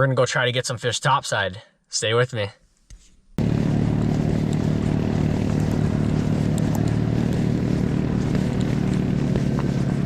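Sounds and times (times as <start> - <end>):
small gasoline engine running: 3.4 - 10.0.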